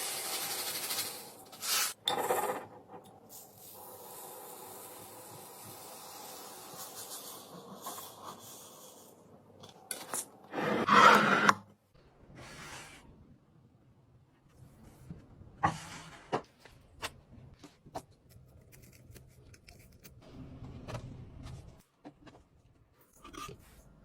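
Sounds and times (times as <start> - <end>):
household items rubbing and scraping: 10.5 - 11.5.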